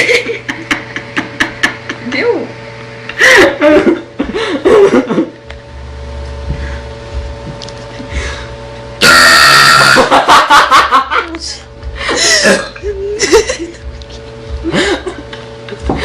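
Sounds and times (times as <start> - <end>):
girl burping: 12.4 - 12.8.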